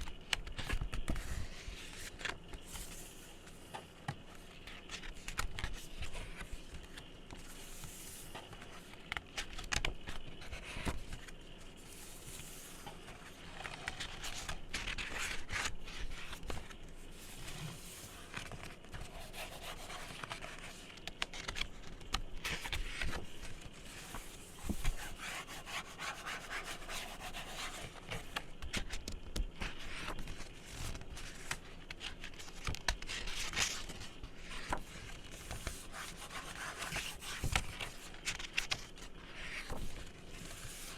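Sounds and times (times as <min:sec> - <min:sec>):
hands rubbing and scratching: 0:04.7 - 0:21.7, 0:23.9 - 0:28.4, 0:35.4 - 0:38.5.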